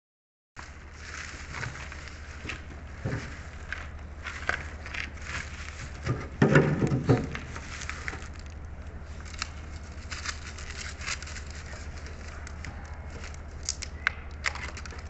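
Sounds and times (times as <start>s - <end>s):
chewing crackles and clicks: 8.0s - 15.0s.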